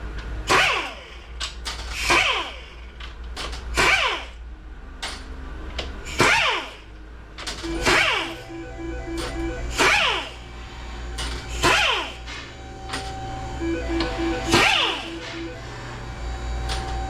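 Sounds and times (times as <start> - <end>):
low steady hum: 7.3 - 17.0
short pulsing tone: 7.7 - 10.3, 13.2 - 17.0
background music: 13.6 - 15.7.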